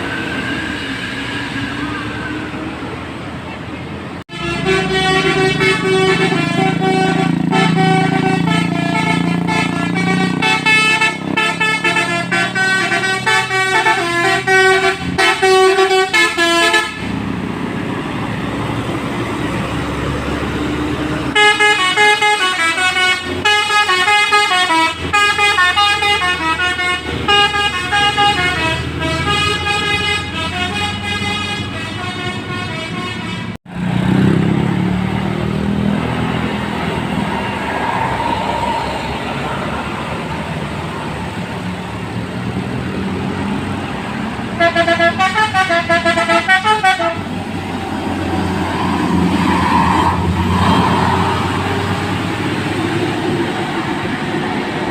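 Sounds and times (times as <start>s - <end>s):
multi-tone bus horn tune: 4.2s - 17.4s, 21.2s - 34.5s, 43.9s - 52.6s.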